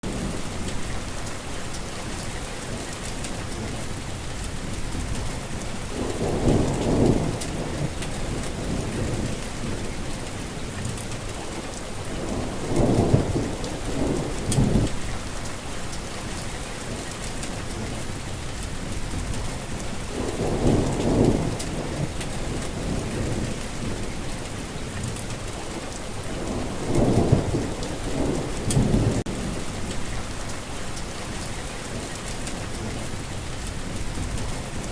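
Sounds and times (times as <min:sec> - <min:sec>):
heavy rain falling: 0:00.0 - 0:34.9
thunder rolling: 0:04.6 - 0:15.5, 0:18.8 - 0:30.6.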